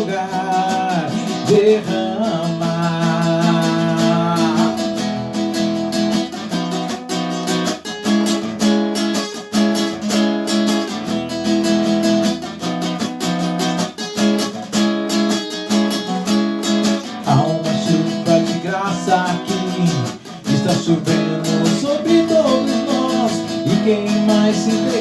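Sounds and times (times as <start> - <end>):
acoustic guitar strumming chords: 0.0 - 25.0.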